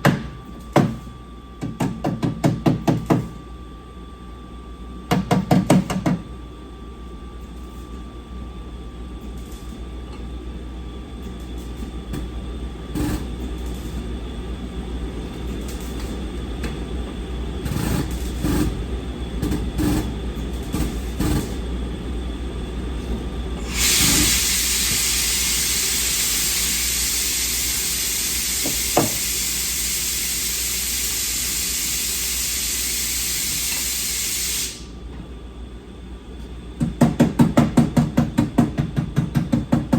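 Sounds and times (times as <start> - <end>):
loud steady hiss: 23.6 - 34.9.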